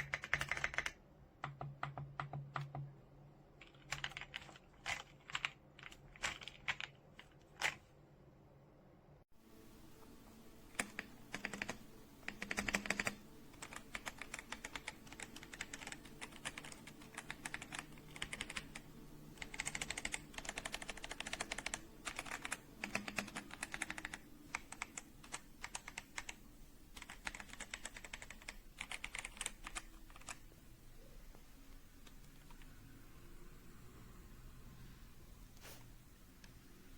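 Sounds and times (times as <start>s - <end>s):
mechanical keyboard typing: 0.0s - 2.9s, 3.6s - 7.8s, 10.7s - 30.4s, 32.1s - 32.7s.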